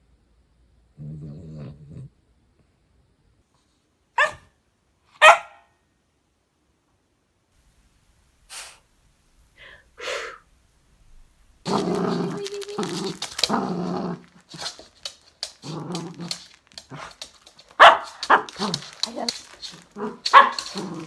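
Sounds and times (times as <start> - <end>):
dog growling: 0.9 - 2.2, 11.6 - 21.0.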